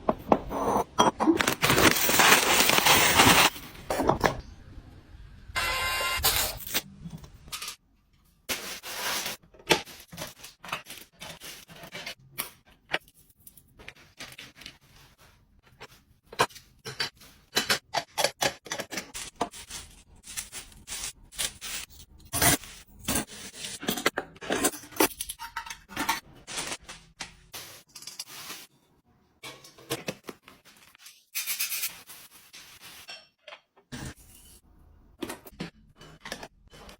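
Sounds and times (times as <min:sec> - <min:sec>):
packaging rustling: 0:01.4 - 0:03.7.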